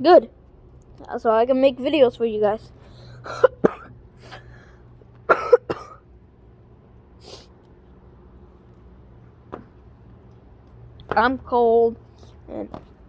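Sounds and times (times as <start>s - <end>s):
person coughing: 3.3s - 4.5s, 5.3s - 6.0s.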